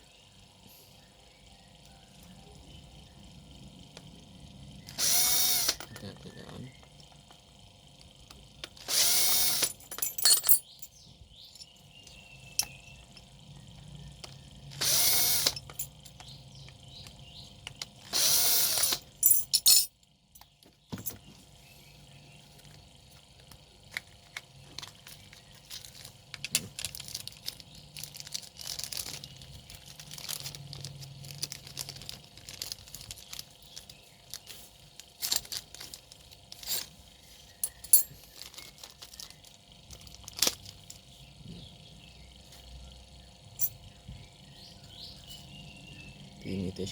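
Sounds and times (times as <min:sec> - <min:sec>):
power drill running: 0:04.8 - 0:06.0, 0:08.8 - 0:09.8, 0:14.7 - 0:15.7, 0:18.0 - 0:19.2
metal parts clicking and tapping: 0:08.3 - 0:10.9, 0:11.5 - 0:21.2, 0:23.4 - 0:37.0, 0:37.6 - 0:41.0.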